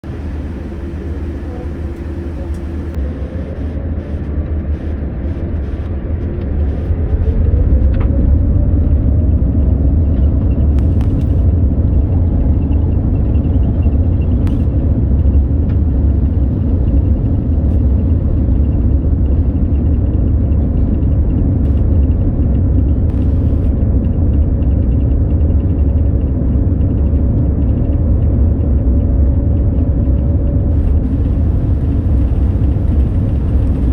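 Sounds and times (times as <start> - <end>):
jet engines spooling up: 0.0 - 7.4, 23.1 - 23.7, 30.7 - 33.9.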